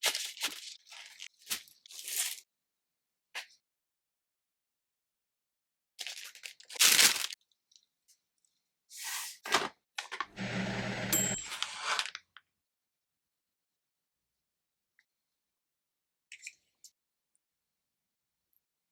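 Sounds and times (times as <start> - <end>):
plastic packaging tearing and crinkling: 0.0 - 2.4, 6.0 - 7.4, 11.6 - 12.2.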